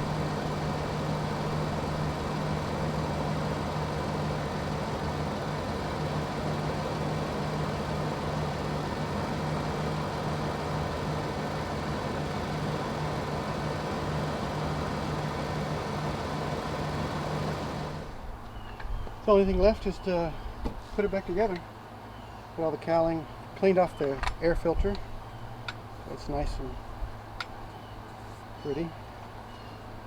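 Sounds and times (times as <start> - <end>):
car engine idling: 0.0 - 18.7.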